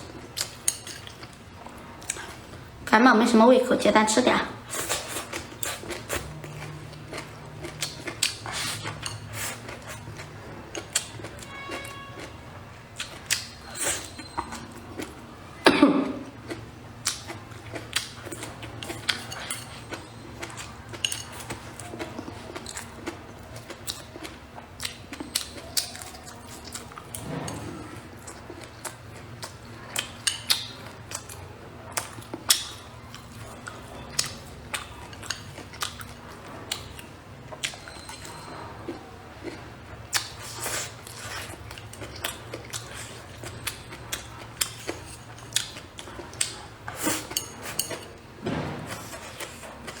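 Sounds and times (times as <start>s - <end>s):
person chewing and biting: 4.7s - 12.4s, 16.4s - 27.4s.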